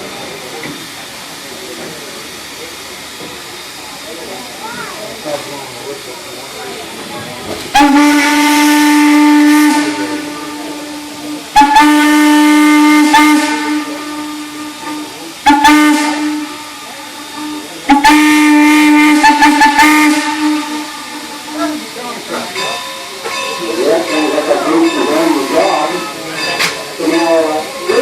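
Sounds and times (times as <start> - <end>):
steam hissing: 0.0 - 28.0
steam locomotive whistle: 7.5 - 28.0.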